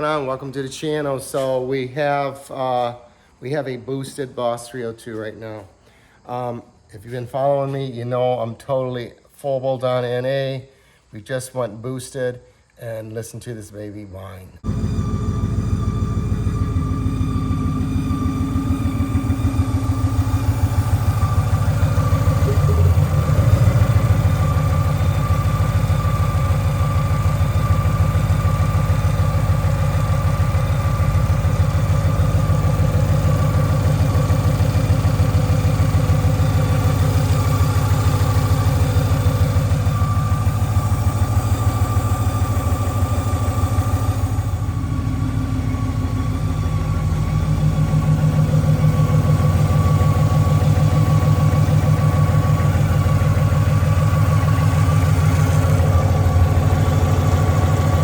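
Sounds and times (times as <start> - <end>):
car engine idling: 14.6 - 58.0
high-pitched whine: 14.6 - 58.0.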